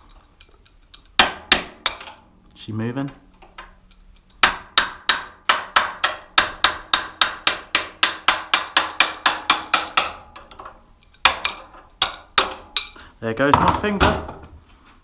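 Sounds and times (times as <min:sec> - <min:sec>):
hammer striking metal: 0:01.2 - 0:02.2, 0:04.4 - 0:10.6, 0:11.2 - 0:13.0.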